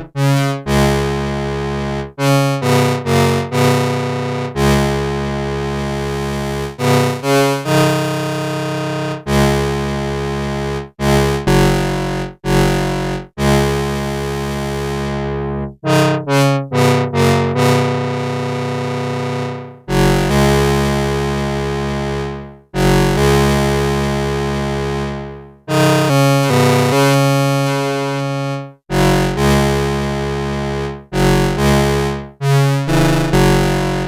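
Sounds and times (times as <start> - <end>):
buzzy analog synthesizer sequence: 5.3 - 27.1, 30.6 - 34.0.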